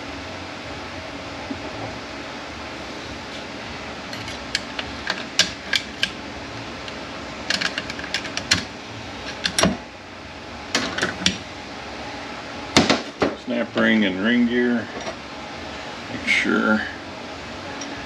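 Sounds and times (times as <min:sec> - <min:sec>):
fan hum: 0:00.0 - 0:18.0
metal parts clicking: 0:04.1 - 0:06.2, 0:07.5 - 0:09.7.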